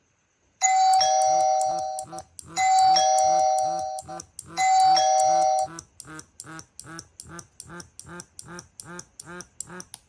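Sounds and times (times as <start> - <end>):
ding-dong doorbell chime: 0.6 - 2.0
vibration motor buzzing: 0.8 - 10.0.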